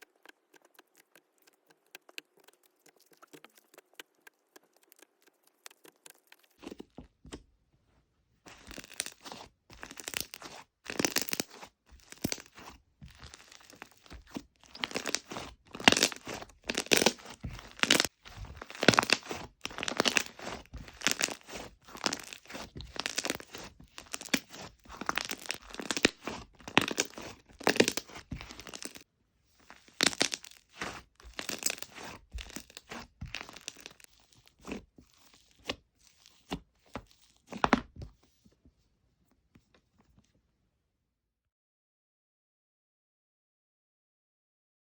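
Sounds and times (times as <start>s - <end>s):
slime tearing and crunching: 0.0s - 6.9s, 8.5s - 29.0s, 29.6s - 37.8s.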